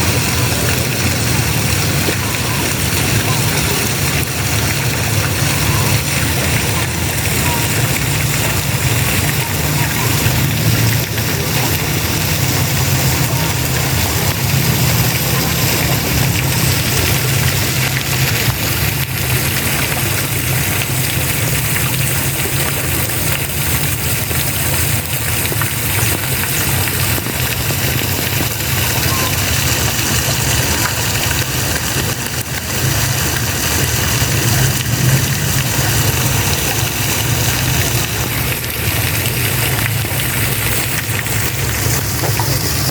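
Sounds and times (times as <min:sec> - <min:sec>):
spraying water rushing: 0:00.0 - 0:42.9
low engine hum: 0:29.6 - 0:42.9.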